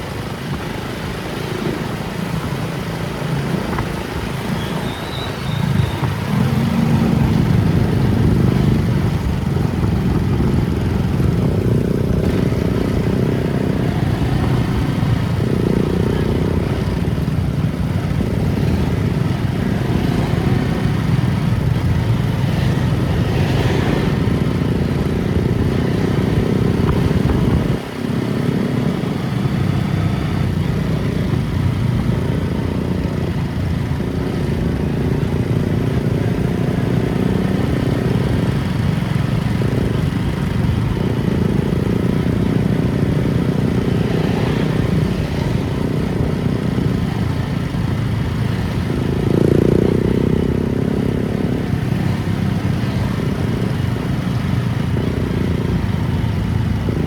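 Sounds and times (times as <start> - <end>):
vehicle engine and road noise: 0.0 - 57.0.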